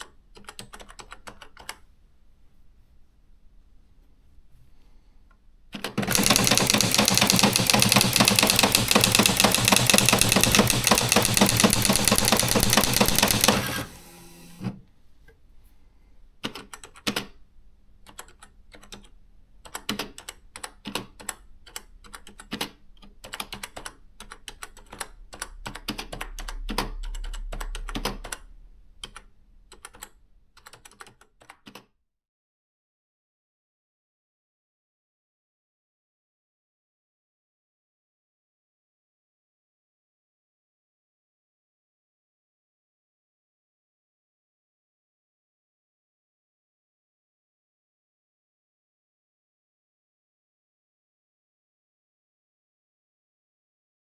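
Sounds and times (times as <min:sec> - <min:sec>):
electronic typewriter printing: 0:05.8 - 0:14.8
typewriter low hum: 0:05.8 - 0:14.8
typewriter key strikes: 0:06.0 - 0:13.9.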